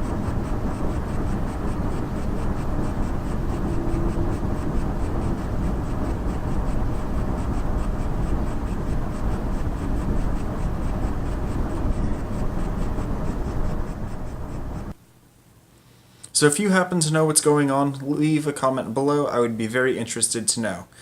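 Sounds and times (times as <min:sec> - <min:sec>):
graphics card crunching crackling noise: 0:00.0 - 0:14.9.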